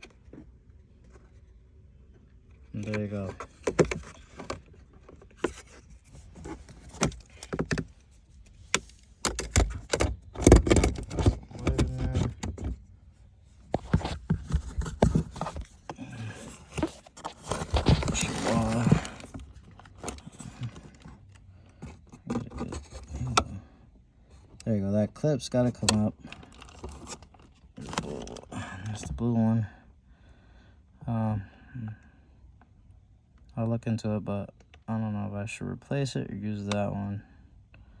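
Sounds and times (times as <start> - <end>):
clicks and scraping of parts: 2.5 - 12.9, 13.6 - 23.6, 25.6 - 28.5.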